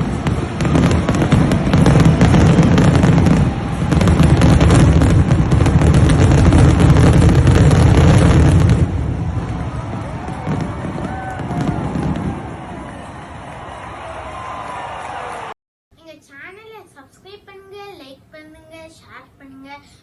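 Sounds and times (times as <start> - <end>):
fireworks booming and crackling: 0.0 - 13.4.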